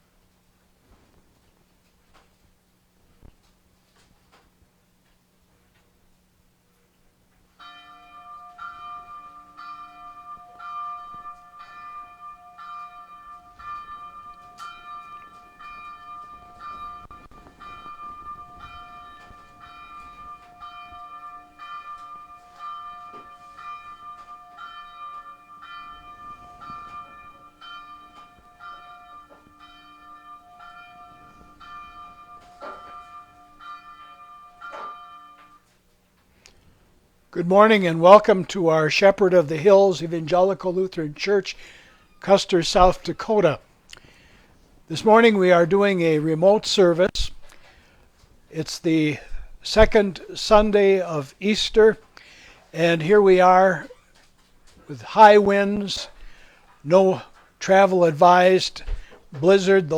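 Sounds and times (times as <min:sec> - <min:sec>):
church bell ringing: 0:07.5 - 0:48.0, 0:48.6 - 0:59.9.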